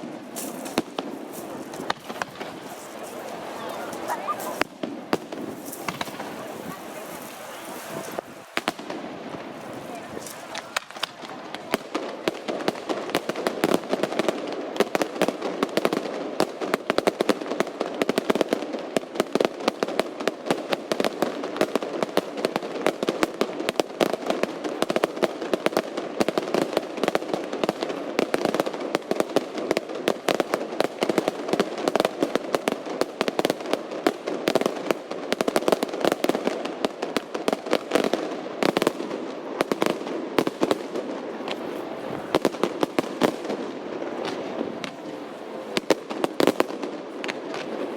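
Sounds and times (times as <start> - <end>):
fireworks crackling and banging: 0.0 - 47.9.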